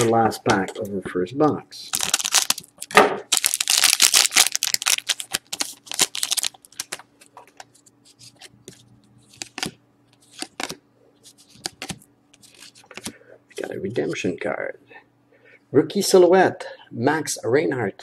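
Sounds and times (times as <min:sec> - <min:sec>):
foil pack tearing and crinkling: 0:01.9 - 0:07.0
cards clicking and tapping: 0:08.6 - 0:10.8, 0:11.5 - 0:13.2.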